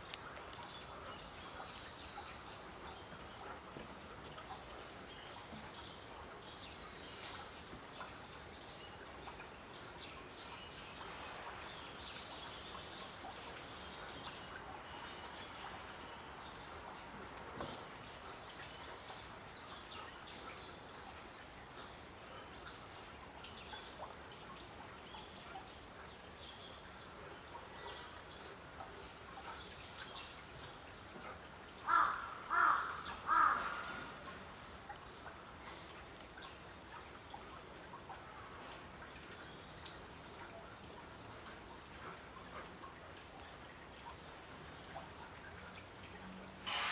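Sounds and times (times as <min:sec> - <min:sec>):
loud bird calls: 0:31.8 - 0:34.1.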